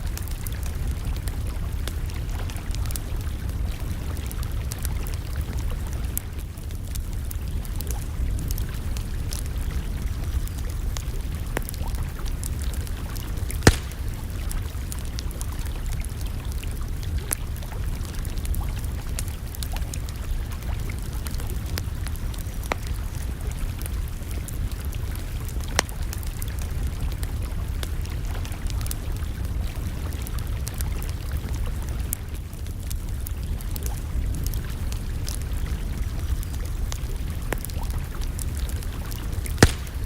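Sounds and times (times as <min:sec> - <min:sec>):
campfire crackling: 0:00.0 - 0:40.0
low fire rumble: 0:00.0 - 0:40.0
sharp fire pop: 0:13.5 - 0:14.4, 0:39.6 - 0:40.0.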